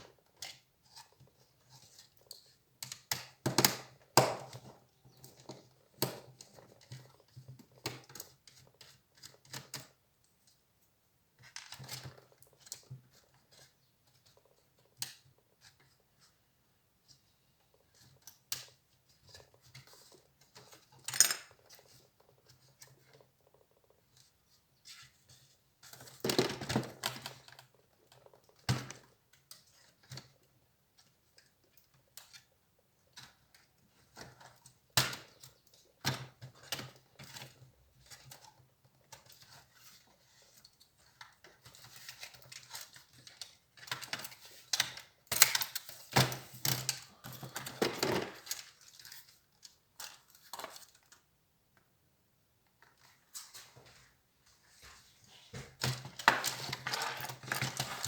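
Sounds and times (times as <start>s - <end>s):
laptop parts and tools clicking: 41.0s - 51.2s, 55.8s - 58.0s.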